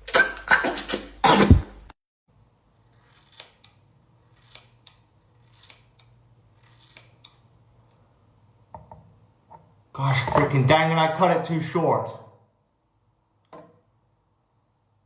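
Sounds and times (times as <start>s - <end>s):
scissors snipping: 2.9s - 7.4s.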